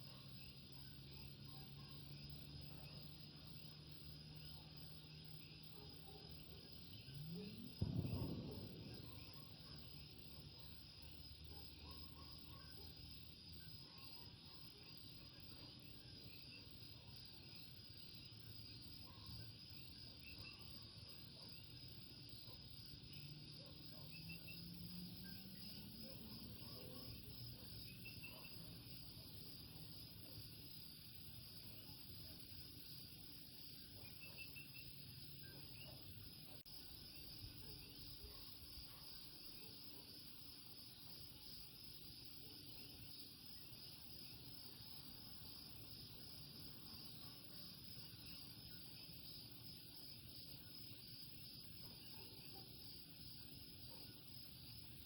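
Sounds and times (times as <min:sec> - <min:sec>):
high insect trill: 0:06.8 - 0:14.2.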